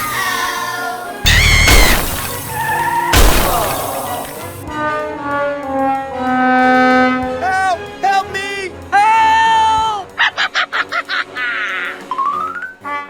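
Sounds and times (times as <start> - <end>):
crashing shattering sound effects: 1.3 - 4.6
background music with held notes: 4.5 - 13.0.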